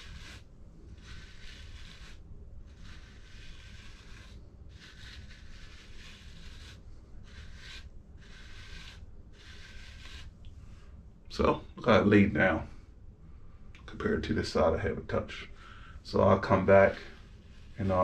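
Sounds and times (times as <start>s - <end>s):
brush scratching through beard: 0.0s - 10.6s, 16.1s - 18.0s.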